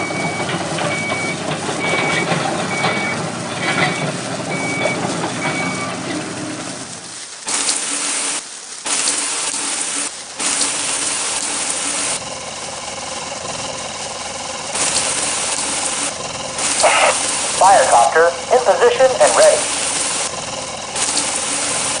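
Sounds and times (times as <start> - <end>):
toy hose hissing spray: 7.1 - 22.0.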